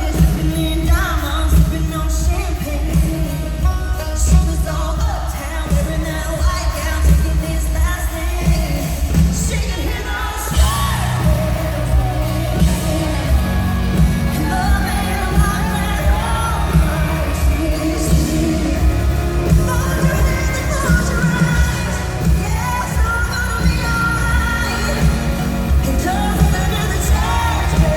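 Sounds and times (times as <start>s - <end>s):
country-pop band playing: 0.0s - 27.9s
steady drum beat: 0.0s - 27.9s
woman singing: 0.0s - 27.9s
heavy bass: 10.6s - 27.9s.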